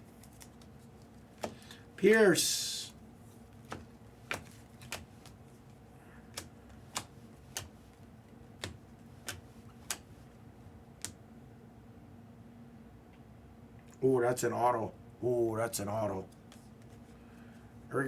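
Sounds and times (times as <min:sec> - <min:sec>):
faint steady hum: 0:00.0 - 0:18.0
cards flipping clicks: 0:03.6 - 0:05.5, 0:06.4 - 0:08.0.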